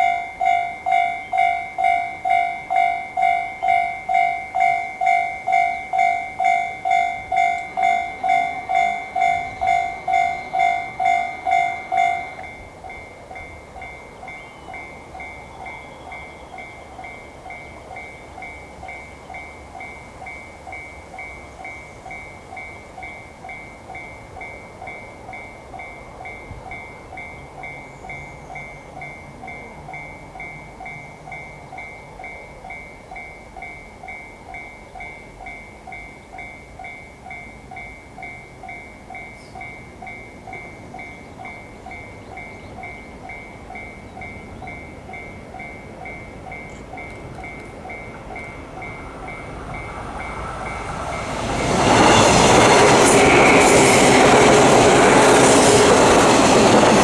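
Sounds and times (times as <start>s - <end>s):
level crossing bell dinging: 0.0s - 12.7s
electric train passing: 0.0s - 57.0s.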